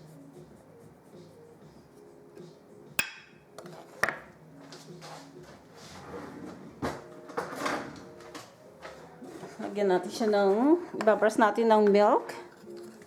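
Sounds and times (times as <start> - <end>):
utensils and dishes clinking: 3.0 - 3.4.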